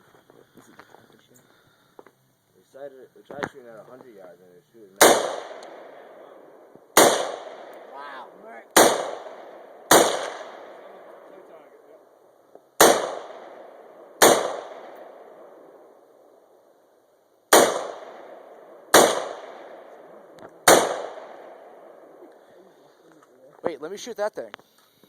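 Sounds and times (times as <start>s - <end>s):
rifle shots with echo: 5.0s - 12.2s, 12.8s - 16.6s, 17.5s - 22.5s.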